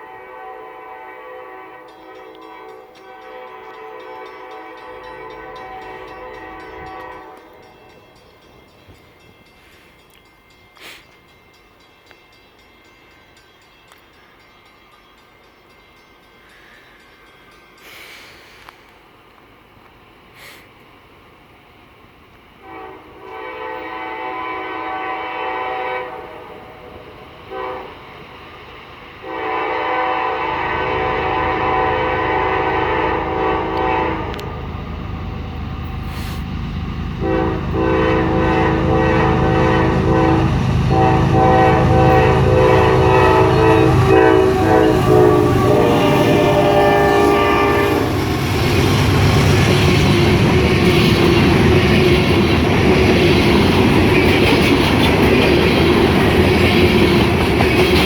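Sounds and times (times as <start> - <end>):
locomotive horn blasts: 0.0 - 7.6, 22.6 - 28.1, 29.2 - 34.6, 37.2 - 48.4
train engine rumble: 0.0 - 58.0.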